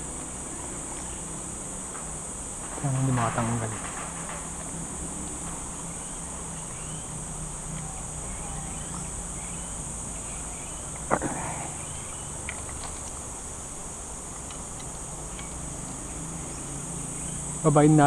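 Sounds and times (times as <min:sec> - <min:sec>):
high-pitched insect buzzing: 0:00.0 - 0:18.0
faint chirps: 0:05.8 - 0:13.0, 0:14.3 - 0:18.0.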